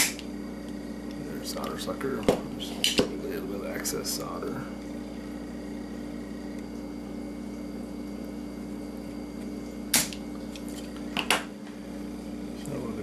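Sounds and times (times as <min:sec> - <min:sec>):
solder sucker snap: 0:00.0 - 0:01.2, 0:09.9 - 0:10.2
electrical hum: 0:00.0 - 0:13.0.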